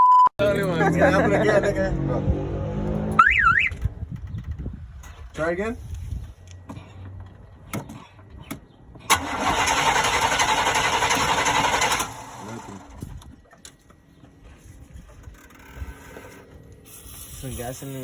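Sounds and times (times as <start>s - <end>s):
sharp starter clicks: 9.1s - 12.7s
engine cranking on starter: 9.1s - 13.0s.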